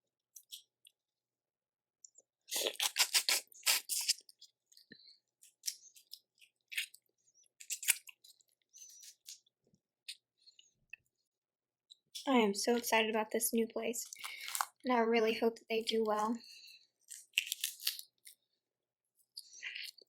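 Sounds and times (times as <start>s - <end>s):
chewing: 2.5s - 11.1s, 14.0s - 14.8s, 16.4s - 18.4s, 19.3s - 20.0s
shells crackling and crunching: 5.4s - 9.4s, 14.0s - 14.8s, 17.0s - 18.4s.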